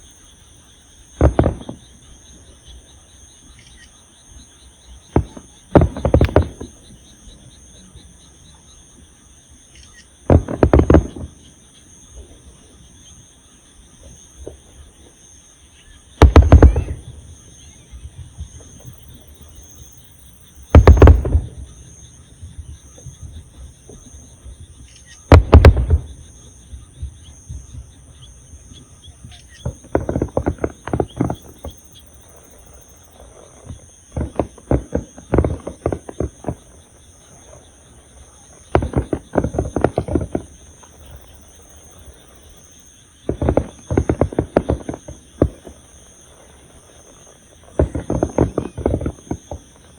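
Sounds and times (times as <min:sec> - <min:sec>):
insects trilling: 0:00.0 - 0:49.9
fireworks crackling: 0:00.8 - 0:08.1, 0:10.1 - 0:15.4, 0:16.0 - 0:49.9
fireworks booming: 0:00.9 - 0:03.6, 0:04.4 - 0:08.6, 0:10.2 - 0:13.2, 0:13.8 - 0:15.3, 0:16.1 - 0:49.9.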